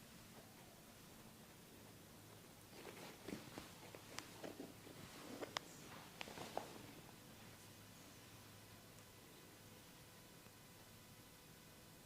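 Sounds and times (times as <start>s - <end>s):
faint room hiss and hum: 0.0s - 12.0s
faint soft ticks and rustles: 0.2s - 9.2s.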